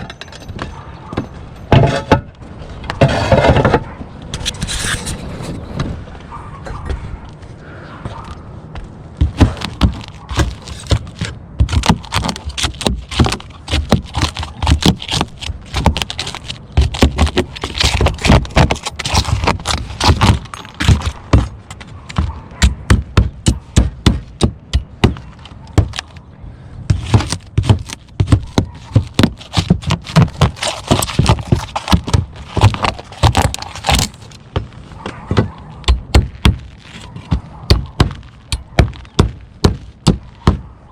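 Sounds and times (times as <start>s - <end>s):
roofing tiles clacking and scraping: 0.0s - 5.6s, 9.2s - 22.3s, 26.9s - 40.4s.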